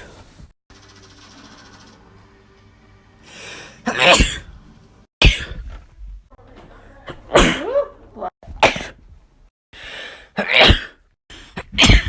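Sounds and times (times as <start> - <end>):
person sneezing loudly: 3.8 - 4.5, 10.4 - 11.0, 11.6 - 12.0.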